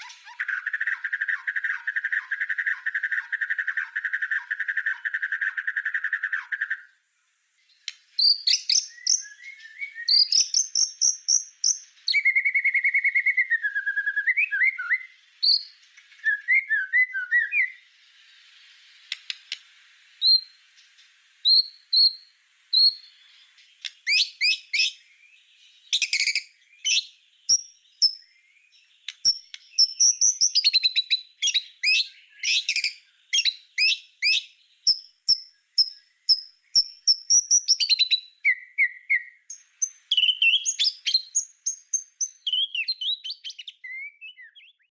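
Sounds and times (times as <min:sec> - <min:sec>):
bird singing varied song: 0:00.0 - 0:44.9.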